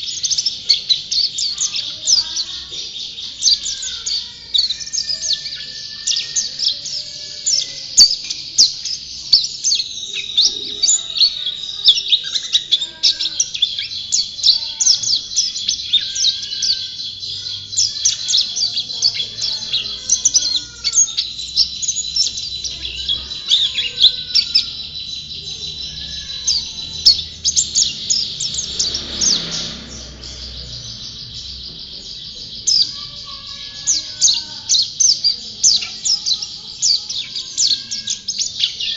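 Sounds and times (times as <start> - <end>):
songbird twittering: 0.0 - 38.9.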